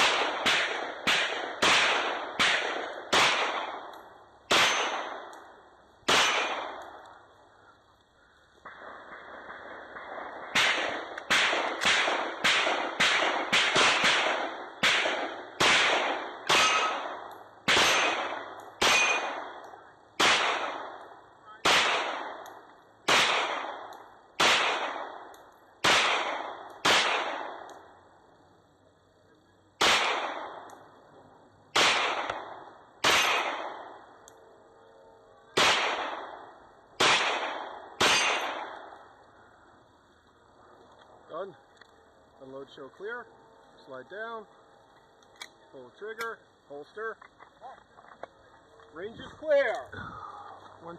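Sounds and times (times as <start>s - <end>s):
pistol shots: 0.0s - 7.2s, 8.6s - 27.9s, 29.8s - 31.0s, 31.7s - 34.2s, 35.5s - 39.2s.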